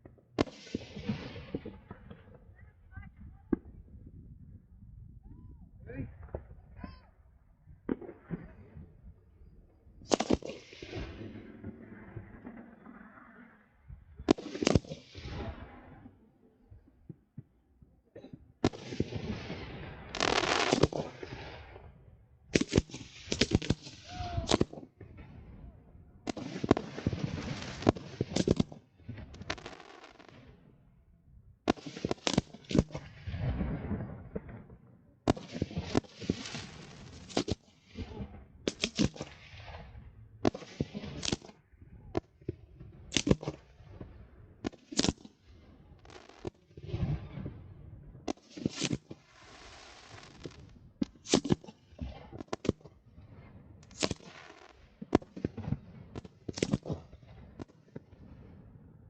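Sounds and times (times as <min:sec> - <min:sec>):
fireworks bangs: 0:00.0 - 0:04.0, 0:07.8 - 0:09.1, 0:10.0 - 0:16.2, 0:18.2 - 0:30.8, 0:31.6 - 0:58.7
fireworks rumble and crackle: 0:00.0 - 0:59.0.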